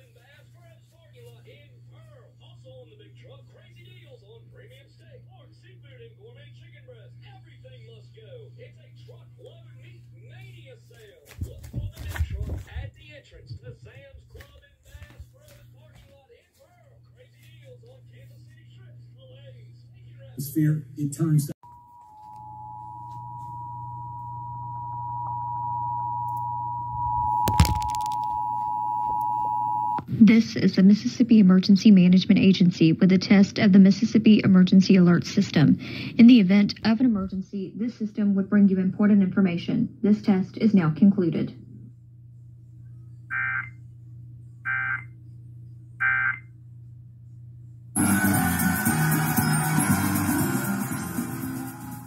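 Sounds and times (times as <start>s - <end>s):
two-tone alert signal: 21.6s - 30.0s
low hum: 21.6s - 52.0s
rock music: 48.0s - 52.0s.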